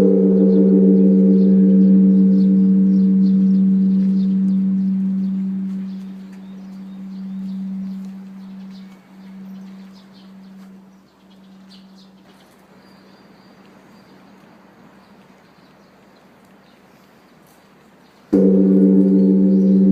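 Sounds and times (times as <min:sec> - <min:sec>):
large temple bell ringing: 0:00.0 - 0:10.4, 0:18.4 - 0:19.9.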